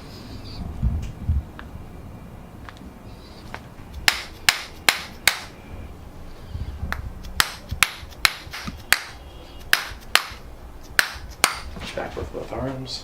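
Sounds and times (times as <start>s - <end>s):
sharp taps: 3.5s - 5.5s, 6.9s - 11.8s.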